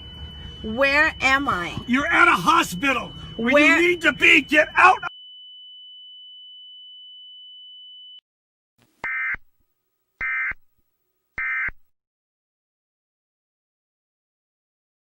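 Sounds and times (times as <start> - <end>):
steady high alert tone: 0.0 - 5.1.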